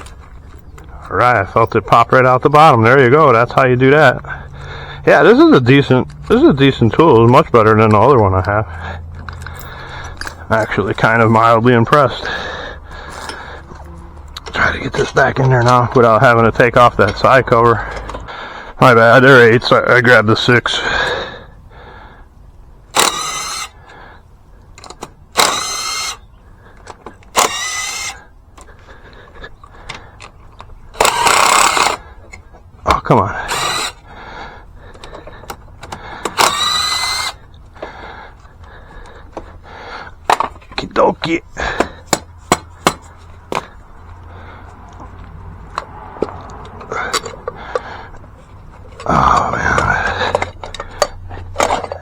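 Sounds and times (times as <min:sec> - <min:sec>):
power driver whirring: 0:22.9 - 0:24.0, 0:24.9 - 0:26.3, 0:27.3 - 0:28.3, 0:30.9 - 0:32.1, 0:33.4 - 0:34.2, 0:35.0 - 0:38.0
metal parts clicking and clinking: 0:50.3 - 0:52.0.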